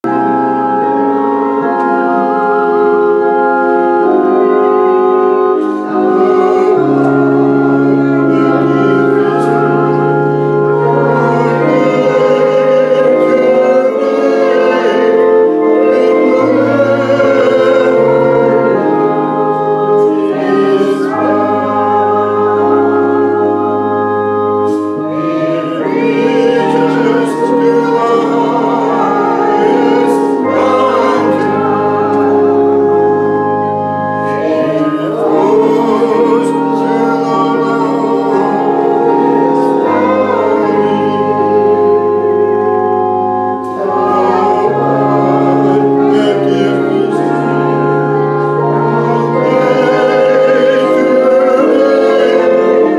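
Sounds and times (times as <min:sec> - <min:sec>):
church organ playing a hymn: 0:00.0 - 0:52.9
voices singing: 0:00.0 - 0:52.9.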